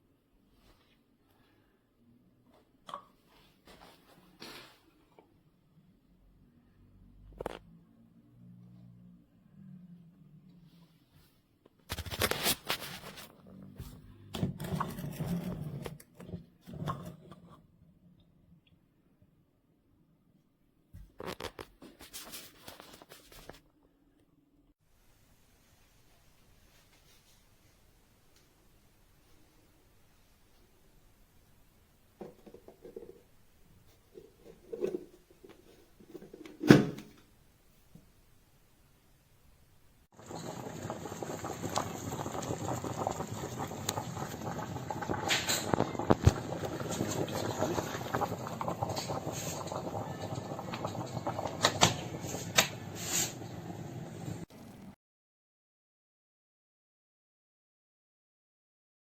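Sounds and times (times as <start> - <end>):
kettle knocks and rattles: 32.2 - 33.3, 34.1 - 37.2.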